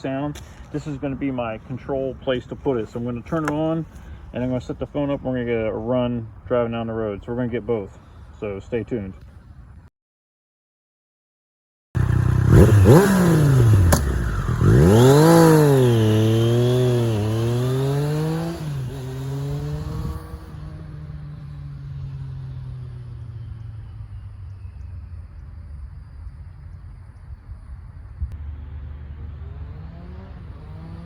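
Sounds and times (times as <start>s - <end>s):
motorcycle engine revving: 12.0s - 25.3s, 28.4s - 31.0s.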